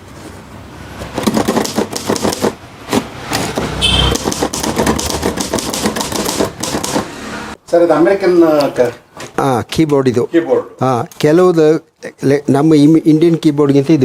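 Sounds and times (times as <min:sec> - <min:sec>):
typewriter keys striking: 0:01.2 - 0:02.6, 0:04.1 - 0:07.1.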